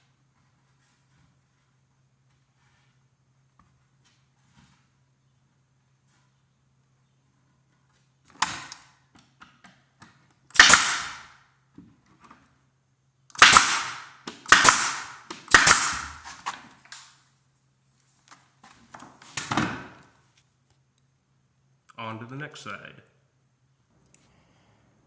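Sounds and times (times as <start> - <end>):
nail gun shots: 8.4 - 8.8, 10.5 - 11.4, 13.3 - 16.4.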